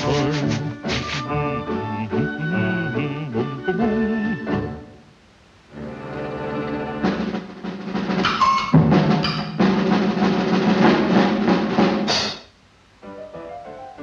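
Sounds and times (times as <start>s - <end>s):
drum roll and snare: 0.0s - 1.3s, 6.9s - 12.5s.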